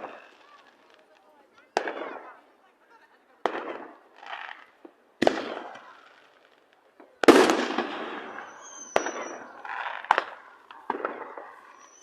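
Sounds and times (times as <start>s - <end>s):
firework cracks: 0.0s - 2.7s, 3.3s - 12.0s
fireworks bangs: 0.0s - 12.0s
firework blast with rumbling tail: 3.4s - 6.0s, 7.2s - 12.0s.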